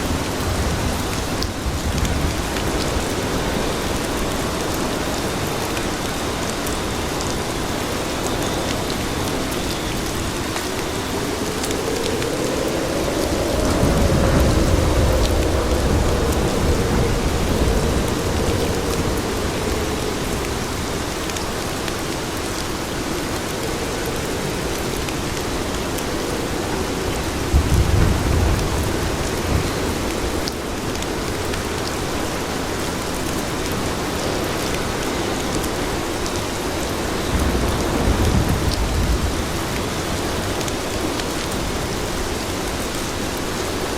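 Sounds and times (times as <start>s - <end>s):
steady rain falling: 0.0s - 43.9s
low rumbles: 10.3s - 21.6s.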